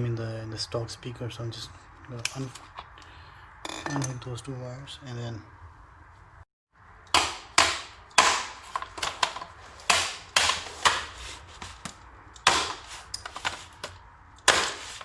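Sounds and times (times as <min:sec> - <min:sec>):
hand tool clacking and snapping: 0:07.2 - 0:11.2.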